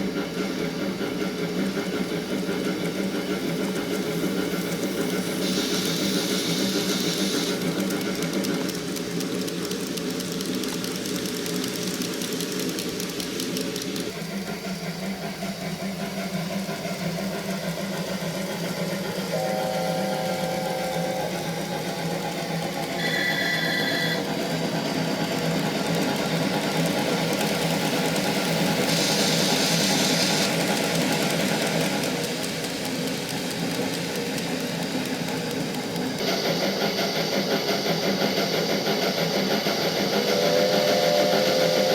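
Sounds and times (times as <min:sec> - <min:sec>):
model train wheels whirring: 0:00.0 - 0:41.9
steam hissing: 0:00.0 - 0:41.9
train whistle: 0:19.3 - 0:21.8, 0:23.0 - 0:24.4, 0:40.2 - 0:41.9.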